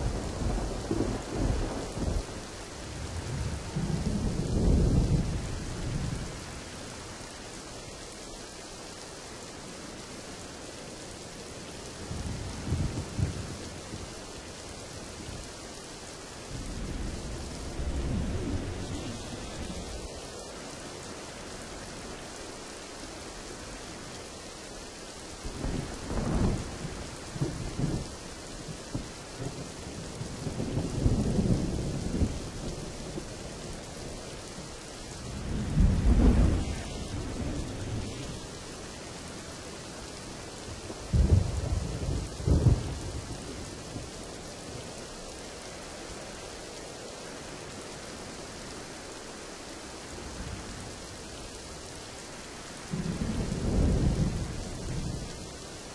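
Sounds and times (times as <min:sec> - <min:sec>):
thunder rumbling: 0:00.0 - 0:06.4, 0:34.5 - 0:39.4, 0:40.1 - 0:44.8, 0:52.9 - 0:55.6
steady rain: 0:00.0 - 0:55.9.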